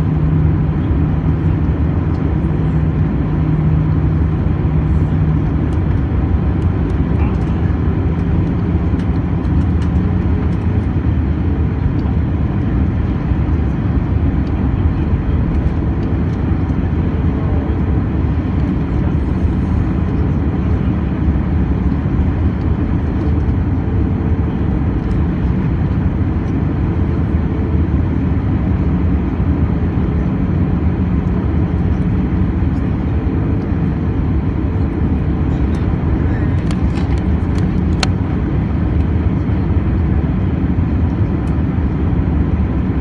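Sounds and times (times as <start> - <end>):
airplane cabin engine rumble: 0.0 - 43.0
faint hum: 0.0 - 43.0.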